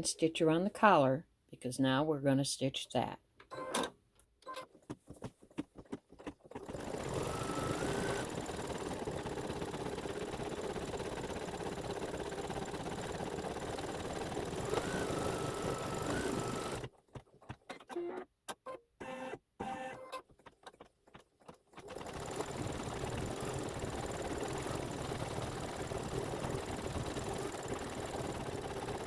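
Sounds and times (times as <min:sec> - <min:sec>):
embroidery machine sewing: 0:06.2 - 0:17.2, 0:21.7 - 0:29.0.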